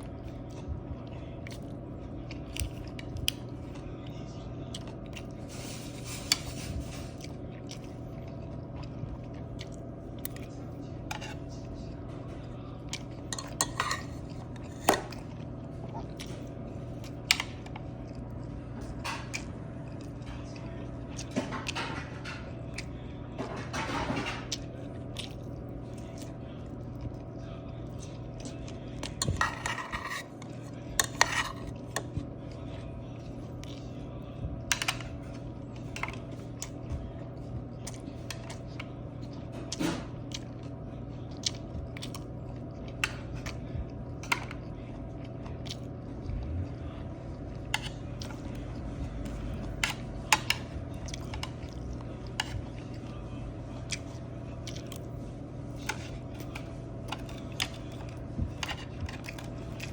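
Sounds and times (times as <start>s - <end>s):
person chewing: 0.0s - 5.4s, 7.1s - 12.1s, 12.8s - 21.8s, 24.5s - 59.9s
steady low hum: 0.0s - 59.9s.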